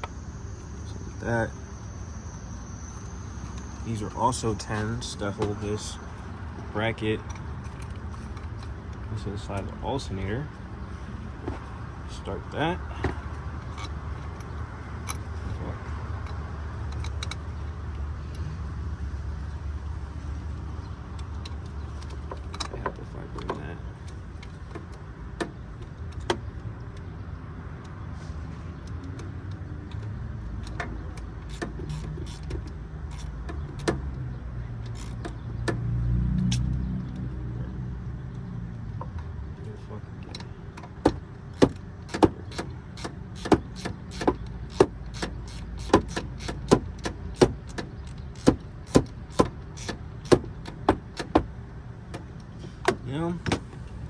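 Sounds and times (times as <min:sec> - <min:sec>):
hand tools clicking on metal: 0:40.4 - 0:51.4.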